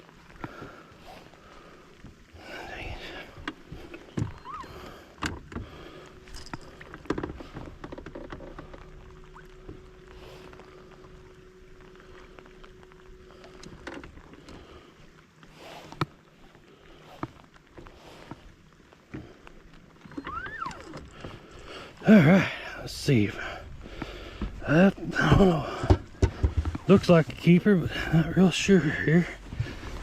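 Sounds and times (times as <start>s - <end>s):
steady hum: 0.0s - 20.0s, 20.8s - 30.0s
knocks and clatter in a boat: 3.4s - 4.6s, 5.2s - 9.8s, 24.0s - 27.4s.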